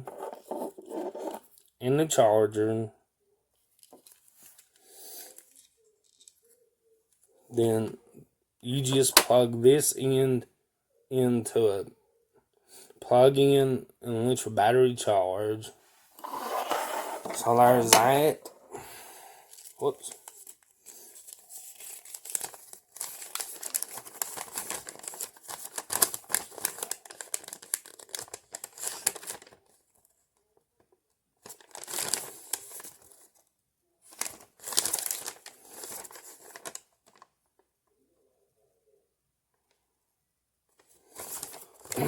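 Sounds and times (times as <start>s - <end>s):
packaging crinkling: 19.5s - 29.6s, 31.4s - 33.2s, 34.1s - 37.3s, 41.1s - 42.0s.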